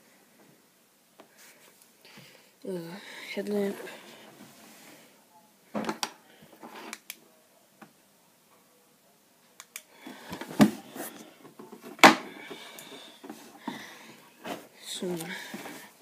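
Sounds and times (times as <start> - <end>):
rustling handling noise: 10.1 - 16.0.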